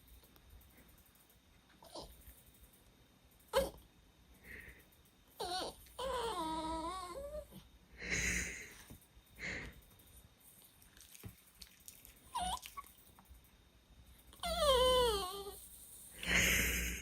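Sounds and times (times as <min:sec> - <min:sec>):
dog whining: 0:01.8 - 0:02.2, 0:03.5 - 0:03.8, 0:05.4 - 0:07.6, 0:12.3 - 0:13.0, 0:14.3 - 0:16.0.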